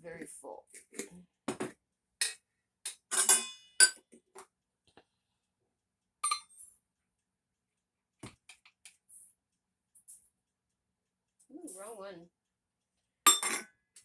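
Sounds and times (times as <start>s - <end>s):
kitchenware clinking: 0.8s - 4.1s, 6.2s - 6.6s, 13.3s - 13.7s.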